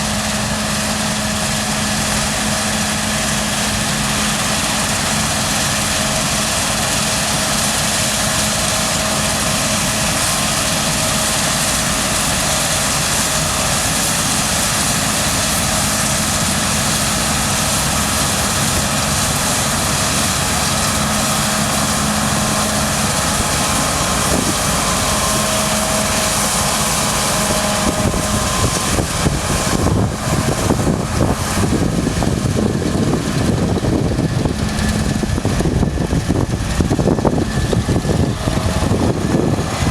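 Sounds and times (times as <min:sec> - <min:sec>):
combine harvester running: 0:00.0 - 0:39.9
rough low rumble: 0:21.2 - 0:39.9.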